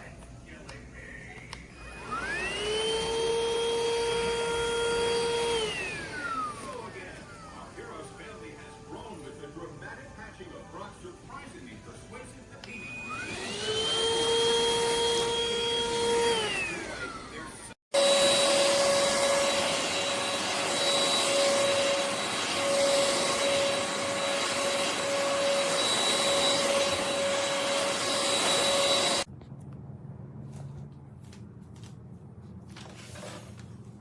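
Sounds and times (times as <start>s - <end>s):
vacuum motor whine: 1.3s - 9.5s, 12.5s - 29.3s.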